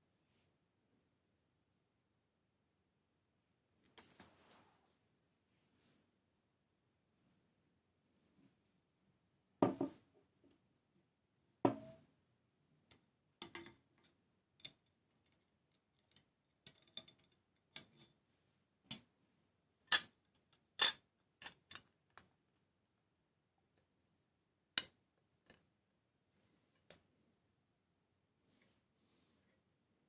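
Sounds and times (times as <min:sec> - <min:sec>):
small parts clicking and tapping: 0:12.9 - 0:18.1.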